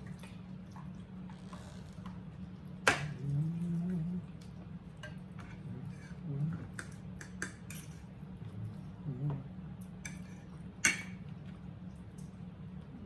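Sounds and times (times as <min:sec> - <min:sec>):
low steady hum: 0:00.0 - 0:13.0
cutlery on plates: 0:10.0 - 0:11.2.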